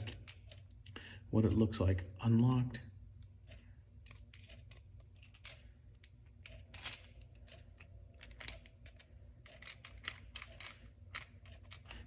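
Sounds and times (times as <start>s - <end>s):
low steady hum: 0.0s - 12.0s
metal clamp clicks and scrapes: 3.5s - 12.0s.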